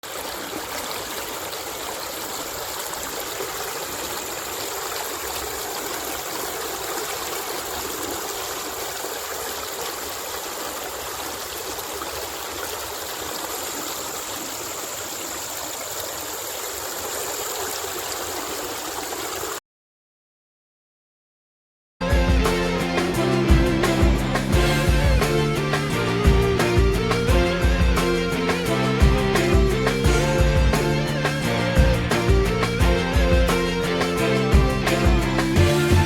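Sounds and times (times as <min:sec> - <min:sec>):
river water rushing: 0:00.0 - 0:19.6.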